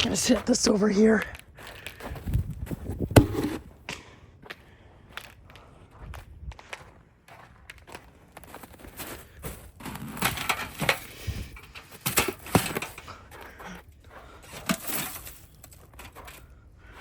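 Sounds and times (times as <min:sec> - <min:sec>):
ice and snow crunching: 0:06.6 - 0:17.0.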